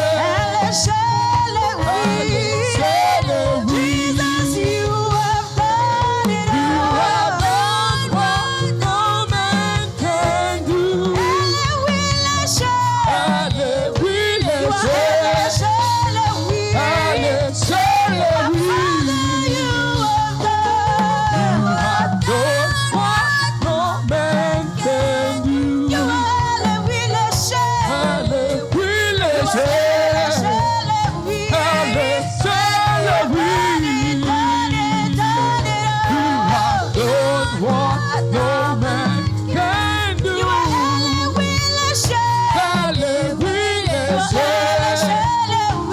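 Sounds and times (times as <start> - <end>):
church choir singing: 0.0 - 41.4, 42.0 - 45.9
band accompaniment: 0.0 - 45.9.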